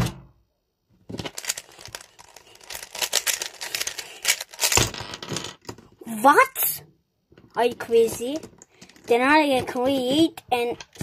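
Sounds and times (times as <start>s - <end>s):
small plastic pieces clicking: 1.1s - 5.9s, 7.8s - 11.0s.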